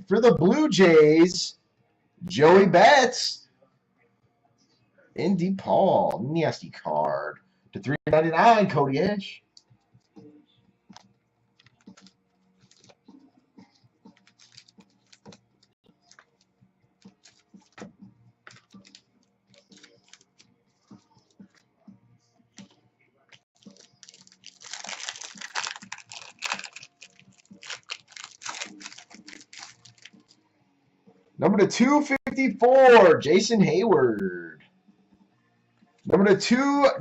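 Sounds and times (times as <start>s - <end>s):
cards rustling: 11.6s - 13.0s, 14.1s - 16.4s, 17.0s - 17.9s, 18.5s - 21.6s, 23.6s - 30.4s.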